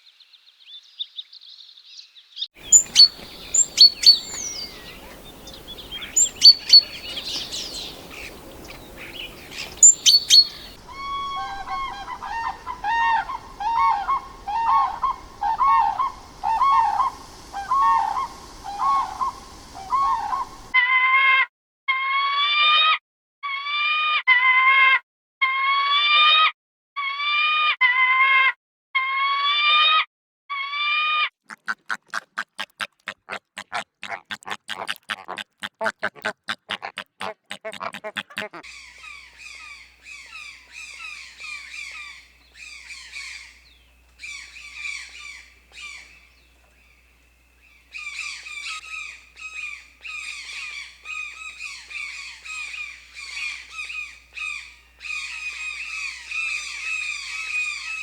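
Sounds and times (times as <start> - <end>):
faint hum: 2.6 - 20.8, 38.7 - 58.0
high squawking chirps: 2.6 - 20.8, 32.6 - 58.0.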